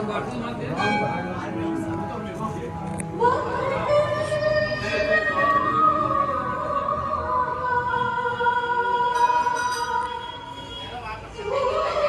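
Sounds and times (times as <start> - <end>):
music with singing: 0.1 - 10.6, 11.4 - 12.0.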